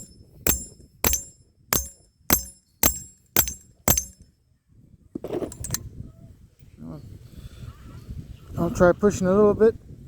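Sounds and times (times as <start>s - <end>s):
mallet tapping metal tool: 0.0s - 4.2s, 5.5s - 5.8s.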